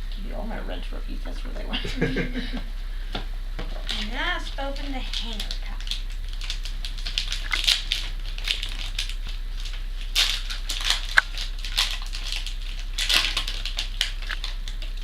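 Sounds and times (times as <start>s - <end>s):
wrapper crinkling and rustling: 3.7s - 15.0s.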